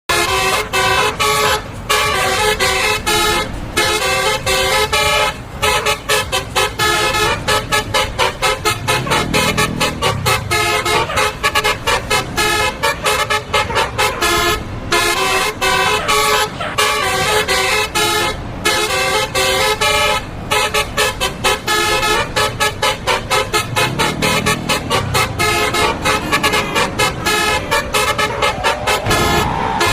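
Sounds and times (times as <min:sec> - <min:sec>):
musical bus horn melody: 0:00.1 - 0:29.9
low rumble: 0:28.5 - 0:29.9.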